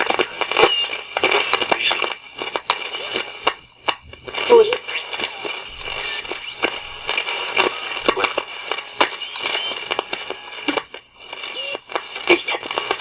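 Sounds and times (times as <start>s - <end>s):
radio crackles and pops: 0.0s - 13.0s
radio static hiss: 0.0s - 13.0s.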